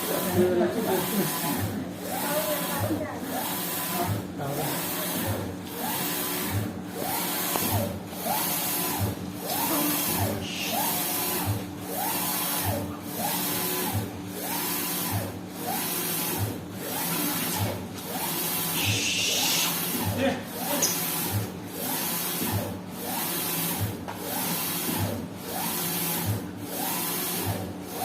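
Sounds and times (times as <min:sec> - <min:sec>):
steady machine hum: 0:00.0 - 0:21.7
printer carriage whine: 0:00.0 - 0:28.0.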